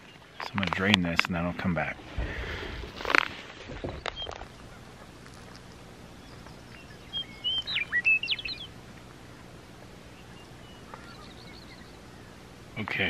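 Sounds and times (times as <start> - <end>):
faint outdoor background: 0.0 - 13.0
songbird whistling: 3.9 - 4.5, 6.2 - 8.8, 10.1 - 12.4.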